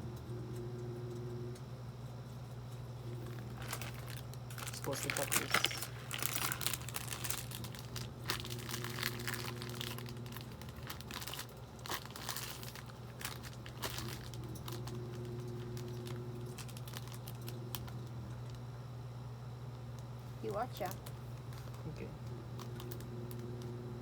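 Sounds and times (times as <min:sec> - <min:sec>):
plastic packaging crinkling: 0:02.9 - 0:18.6, 0:20.7 - 0:23.7.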